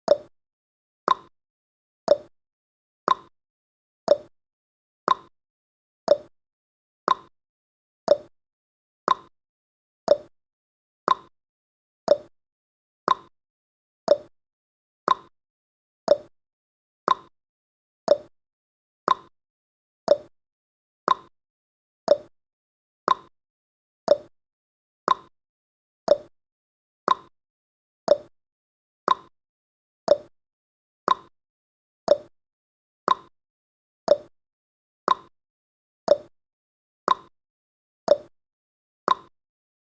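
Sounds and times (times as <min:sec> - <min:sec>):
timer ticking clicks: 0:00.1 - 0:00.3, 0:01.1 - 0:01.3, 0:02.1 - 0:02.3, 0:03.1 - 0:03.3, 0:04.1 - 0:04.3, 0:05.1 - 0:05.3, 0:06.1 - 0:06.3, 0:07.1 - 0:07.3, 0:08.1 - 0:08.3, 0:09.1 - 0:09.3, 0:10.1 - 0:10.3, 0:11.1 - 0:11.3, 0:12.1 - 0:12.3, 0:13.1 - 0:13.3, 0:14.1 - 0:14.3, 0:15.1 - 0:15.3, 0:16.1 - 0:16.3, 0:17.1 - 0:17.3, 0:18.1 - 0:18.3, 0:19.1 - 0:19.3, 0:20.1 - 0:20.3, 0:21.1 - 0:21.3, 0:22.1 - 0:22.3, 0:23.1 - 0:23.3, 0:24.1 - 0:24.3, 0:25.1 - 0:25.3, 0:26.1 - 0:26.3, 0:27.1 - 0:27.3, 0:28.1 - 0:28.3, 0:29.1 - 0:29.3, 0:30.1 - 0:30.3, 0:31.1 - 0:31.3, 0:32.1 - 0:32.3, 0:33.1 - 0:33.3, 0:34.1 - 0:34.3, 0:35.1 - 0:35.3, 0:36.1 - 0:36.3, 0:37.1 - 0:37.3, 0:38.1 - 0:38.3, 0:39.1 - 0:39.3.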